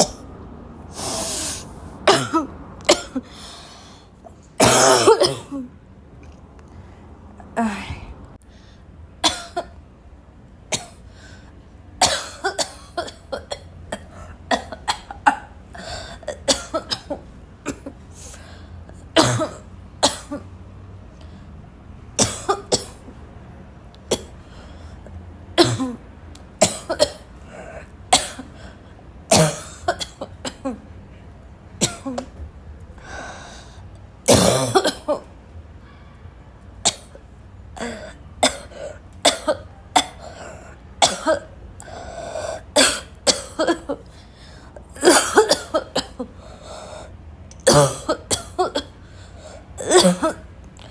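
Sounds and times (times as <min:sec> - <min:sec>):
person coughing: 0:01.0 - 0:03.5, 0:04.6 - 0:05.7, 0:12.0 - 0:18.0, 0:19.2 - 0:20.4, 0:25.6 - 0:26.0, 0:28.2 - 0:28.6, 0:29.3 - 0:30.8, 0:31.8 - 0:32.3, 0:34.3 - 0:35.3, 0:37.8 - 0:41.5, 0:42.8 - 0:44.1, 0:44.9 - 0:46.4, 0:47.6 - 0:48.9, 0:49.8 - 0:50.5.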